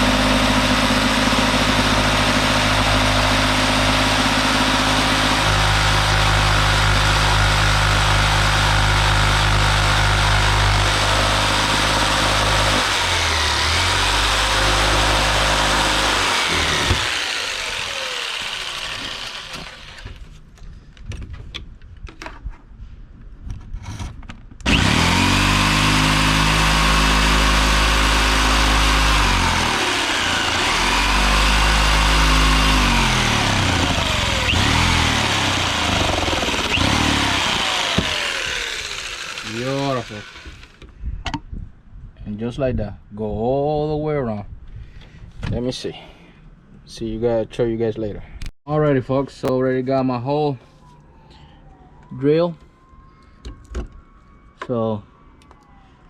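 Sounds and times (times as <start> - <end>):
electric power saw cutting: 0.0 - 20.3, 24.6 - 40.9.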